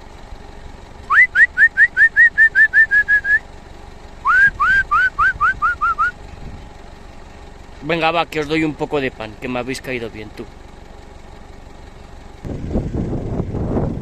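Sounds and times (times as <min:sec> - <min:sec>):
person whistling rising notes: 0:01.1 - 0:03.4, 0:04.2 - 0:06.2.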